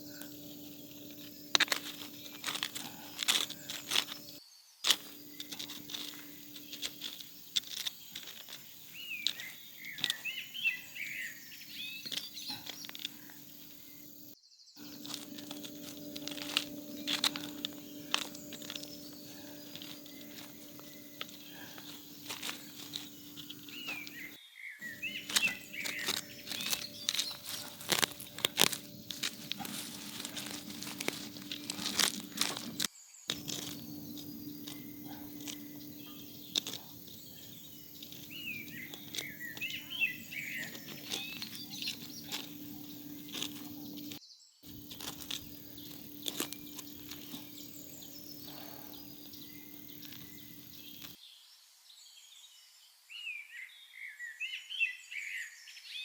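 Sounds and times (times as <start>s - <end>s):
bird twittering: 0.0s - 51.2s
crackling handling noise: 0.0s - 51.2s
low hum: 13.6s - 44.2s.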